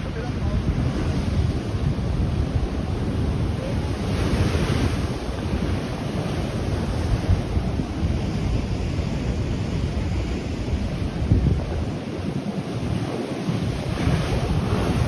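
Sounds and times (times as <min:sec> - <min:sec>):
surf on rocky shore: 0:00.0 - 0:15.0
wind buffeting microphone: 0:00.0 - 0:15.0.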